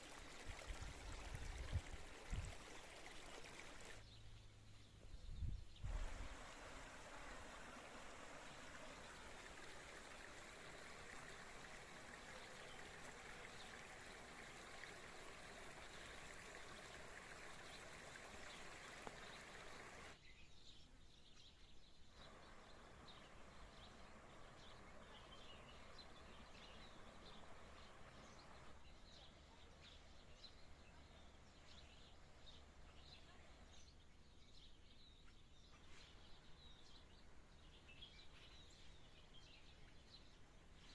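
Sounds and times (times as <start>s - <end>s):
stream running water: 0.0s - 4.7s, 5.8s - 20.2s, 22.1s - 40.9s
birds chirping: 2.6s - 40.9s.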